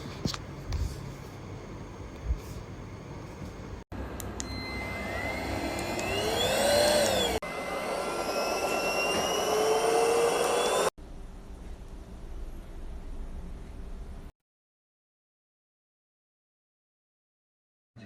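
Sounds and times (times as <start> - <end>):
stick vacuum motor whine: 4.2 - 10.9.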